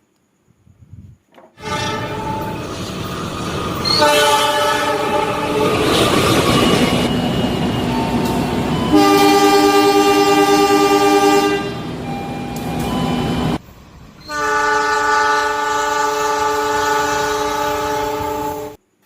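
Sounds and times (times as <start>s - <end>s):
train rumble: 0.6s - 18.8s
train horn blasts: 1.6s - 2.8s, 3.8s - 6.1s, 8.1s - 13.6s, 14.2s - 18.8s.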